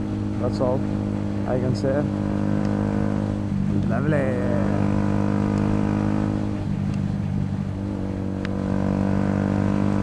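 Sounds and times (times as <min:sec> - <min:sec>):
motorcycle engine running: 0:00.0 - 0:10.0.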